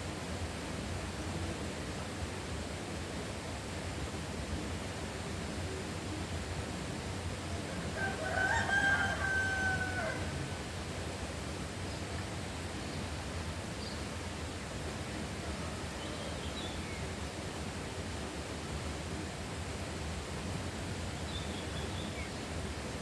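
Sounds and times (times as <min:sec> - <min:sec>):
background hiss: 0:00.0 - 0:23.0
rooster crowing: 0:07.9 - 0:10.5
faint high bird chirps: 0:15.9 - 0:17.1.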